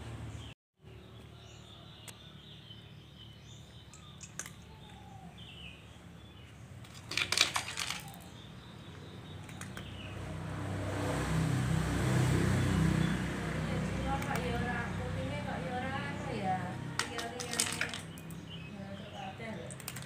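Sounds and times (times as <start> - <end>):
small objects clinking on metal: 6.8 - 8.3, 17.0 - 18.3
faint clicks: 8.9 - 9.9.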